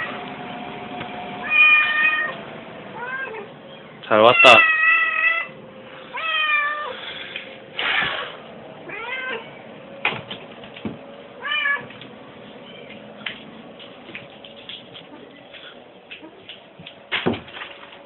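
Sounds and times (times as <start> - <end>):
cat meowing: 1.4 - 2.4, 3.0 - 3.5, 4.3 - 7.0, 7.8 - 9.5, 11.4 - 11.9
brief noisy burst: 7.7 - 8.4.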